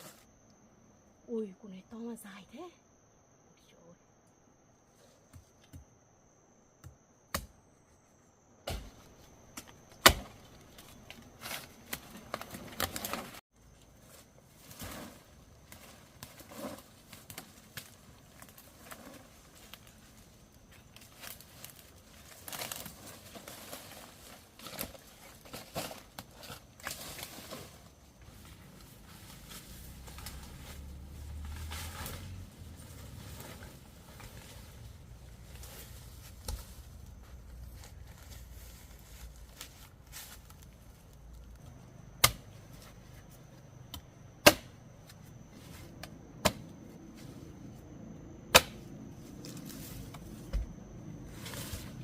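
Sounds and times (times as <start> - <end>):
high-pitched insect tone: 0.0 - 11.9
soil and vegetation crackling: 8.7 - 52.0.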